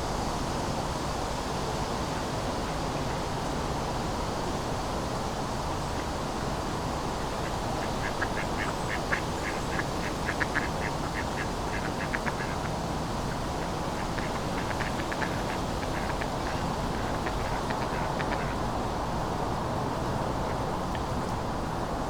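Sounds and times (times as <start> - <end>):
wind: 0.0 - 22.0
distant city traffic hum: 2.1 - 22.0
duck quacking: 7.8 - 12.8, 13.6 - 18.7.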